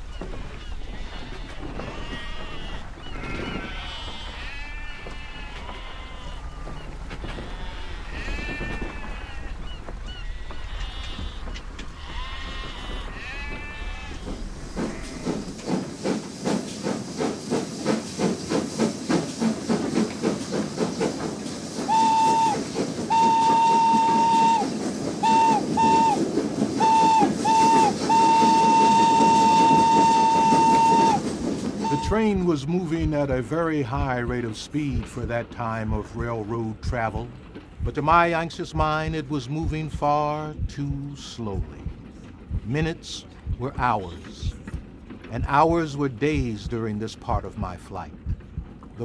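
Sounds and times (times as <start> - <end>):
steam locomotive exhaust chuffs: 0.0 - 49.0
wavering calls: 21.7 - 32.2
steam whistle blasts: 21.8 - 32.4.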